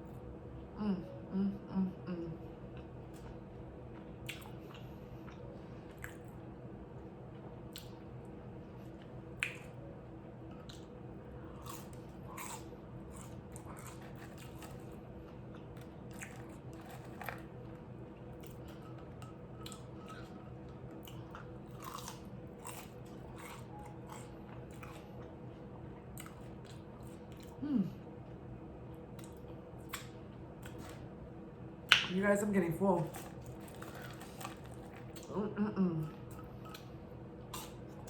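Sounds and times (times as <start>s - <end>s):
person chewing and crunching food: 2.6s - 6.4s, 8.8s - 9.8s, 10.6s - 27.8s, 29.0s - 31.1s, 31.9s - 35.4s, 36.1s - 38.0s.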